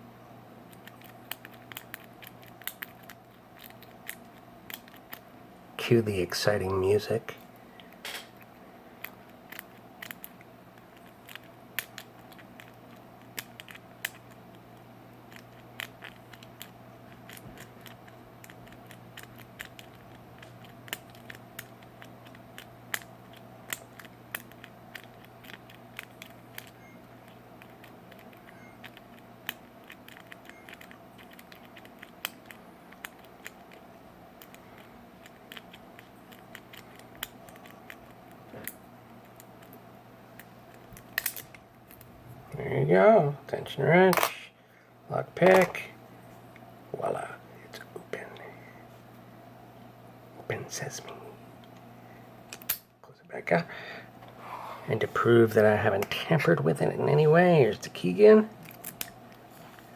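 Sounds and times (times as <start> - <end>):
metallic clicks and scrapes of lock picking: 0.7 - 5.2, 8.0 - 14.6, 15.3 - 33.8, 34.4 - 39.8, 40.4 - 42.1, 52.5 - 52.9, 58.6 - 59.2.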